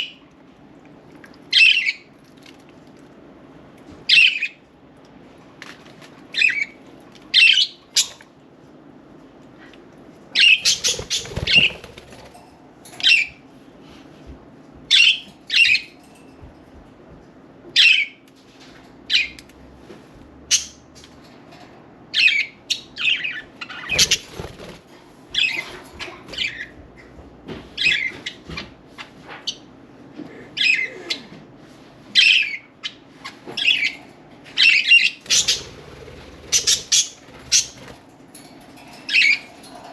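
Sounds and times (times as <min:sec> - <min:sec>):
budgerigars chirping and squawking: 0:10.4 - 0:12.0, 0:22.2 - 0:24.6, 0:30.6 - 0:30.9, 0:32.2 - 0:34.0, 0:34.6 - 0:38.0
wings fluttering: 0:10.5 - 0:12.6, 0:23.8 - 0:26.6, 0:35.2 - 0:38.2.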